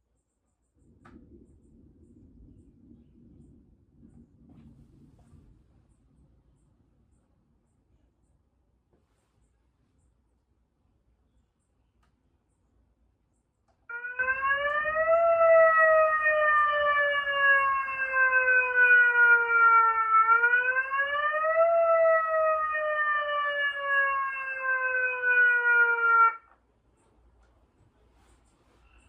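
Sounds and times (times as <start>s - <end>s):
megaphone siren wailing: 13.9s - 26.6s.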